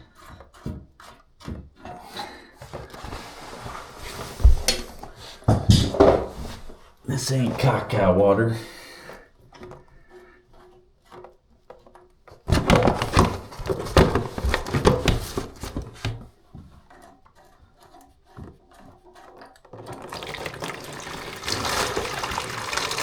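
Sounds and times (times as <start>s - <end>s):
knocking and clattering on plumbing: 0.0s - 3.2s, 4.2s - 6.9s, 9.4s - 23.0s
water rushing out: 20.0s - 23.0s.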